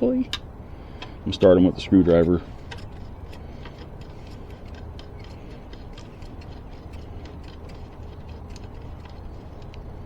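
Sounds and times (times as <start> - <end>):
small metallic clicks: 0.2 - 1.5, 2.2 - 9.9.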